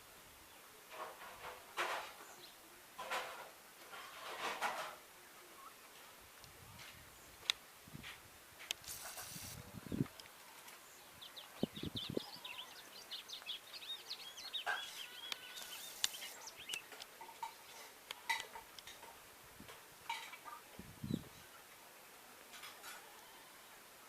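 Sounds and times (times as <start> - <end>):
bird twittering song: 10.8 - 17.9, 21.0 - 21.6.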